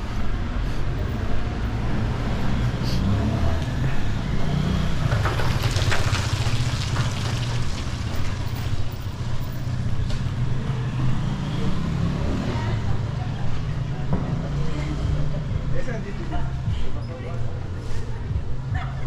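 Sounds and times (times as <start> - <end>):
vehicle engines running: 0.0 - 19.0
higher clatter: 5.0 - 8.8.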